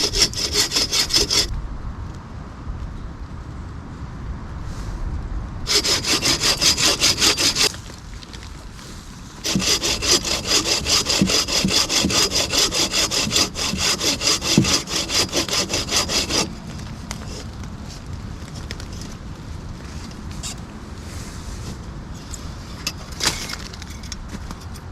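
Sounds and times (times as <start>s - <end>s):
hand saw cutting wood: 0.0s - 1.5s, 5.7s - 7.8s, 9.4s - 16.6s.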